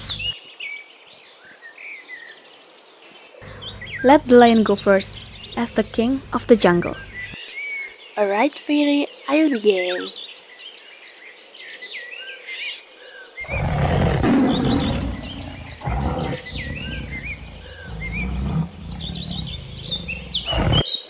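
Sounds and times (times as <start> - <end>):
birds chirping: 0.0 - 0.4, 3.4 - 10.9, 13.4 - 20.8
lion roaring: 13.4 - 20.8.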